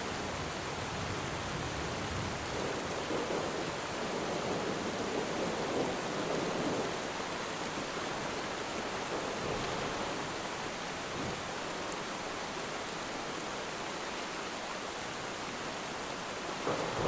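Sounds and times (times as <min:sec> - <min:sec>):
rain falling on water: 0:00.0 - 0:17.0
distant thunder rumble: 0:00.2 - 0:07.1, 0:16.6 - 0:17.0.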